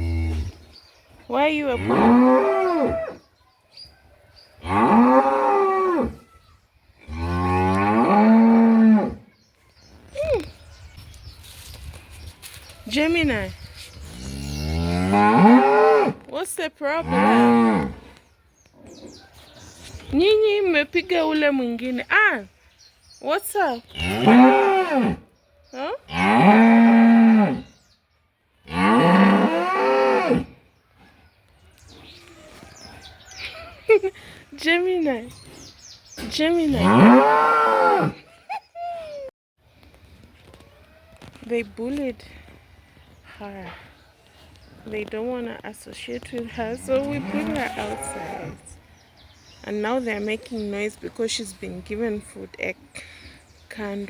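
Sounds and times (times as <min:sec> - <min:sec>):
cows mooing: 0:01.7 - 0:03.2, 0:14.2 - 0:16.2, 0:28.7 - 0:30.5, 0:46.8 - 0:48.6.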